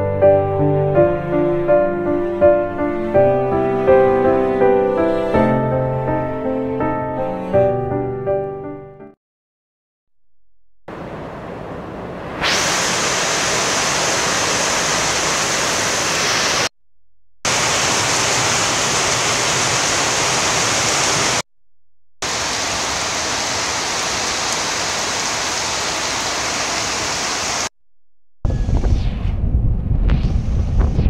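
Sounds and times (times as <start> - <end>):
steady rushing noise: 10.9 - 16.7
gusty wind on microphone: 28.4 - 31.0.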